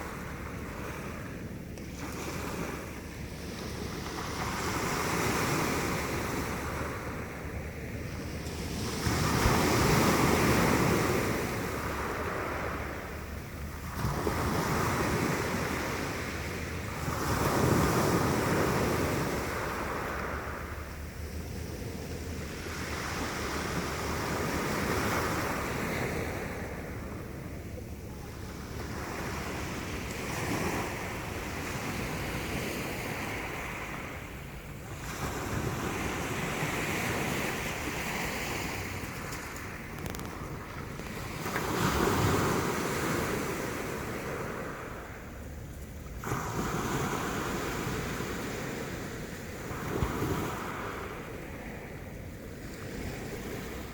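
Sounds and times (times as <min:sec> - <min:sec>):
sea waves washing ashore: 0:00.0 - 0:53.9
wind rumble on microphone: 0:00.0 - 0:53.9.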